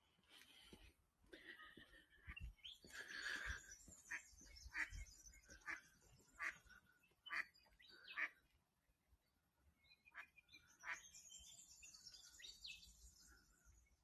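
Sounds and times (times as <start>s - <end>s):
bird calls: 1.4s - 8.5s, 9.8s - 14.0s.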